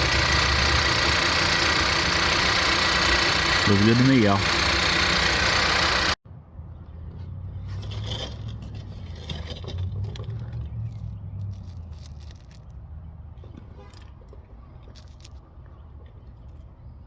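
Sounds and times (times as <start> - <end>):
scraping and rustling: 7.6 - 12.7.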